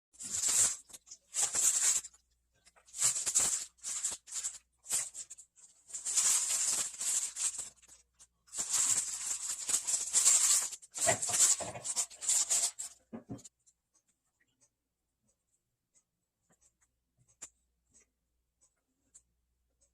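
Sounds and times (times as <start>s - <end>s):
rattling rustling handling noise: 2.8s - 13.5s.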